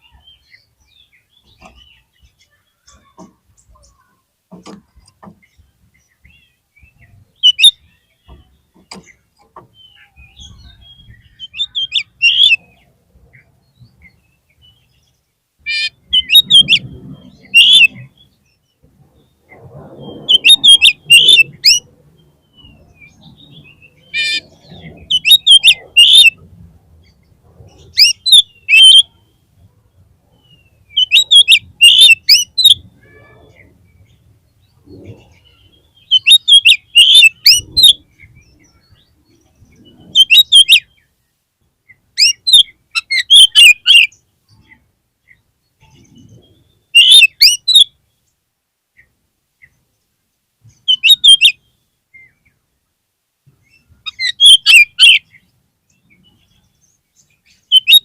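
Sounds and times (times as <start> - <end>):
bird singing chirps and whistles: 6.2 - 9.0, 9.8 - 12.8, 15.7 - 18.4, 19.2 - 26.4, 27.8 - 29.3, 30.4 - 34.1, 35.1 - 41.1, 42.2 - 44.2, 45.8 - 48.0, 50.8 - 52.4, 53.7 - 55.4, 57.4 - 58.0.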